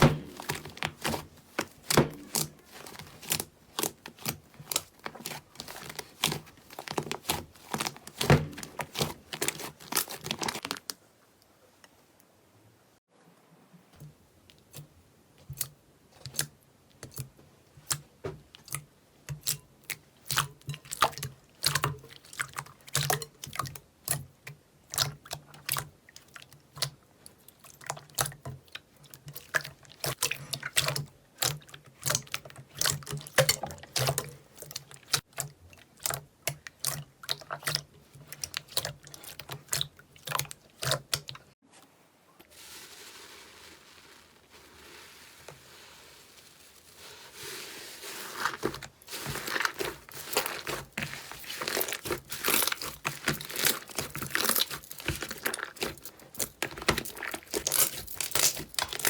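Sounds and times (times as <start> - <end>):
soft hiss: 41.7 - 48.4.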